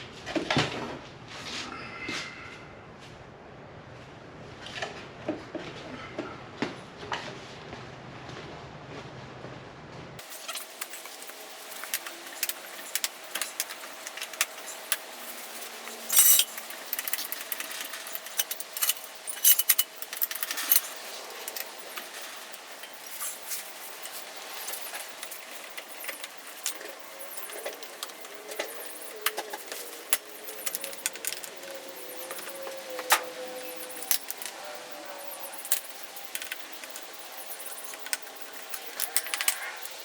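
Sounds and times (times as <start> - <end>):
metal tools and lug nuts clinking: 10.2 - 40.0.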